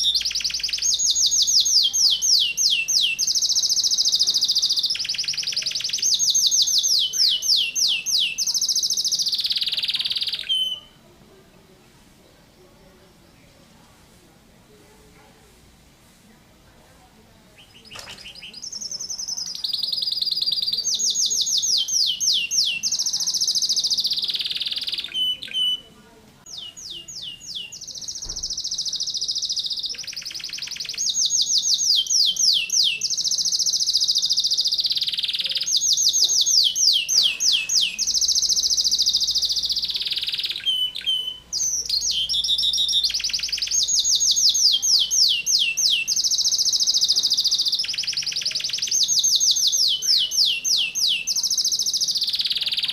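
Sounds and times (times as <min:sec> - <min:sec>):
canary singing trills: 0:00.0 - 0:11.1, 0:17.4 - 0:52.9.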